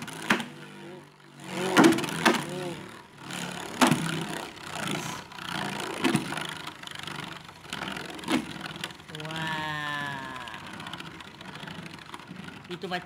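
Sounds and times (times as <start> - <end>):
spinning top whirring: 0.0 - 13.0
drawn-out voice: 0.8 - 3.0, 9.1 - 11.9.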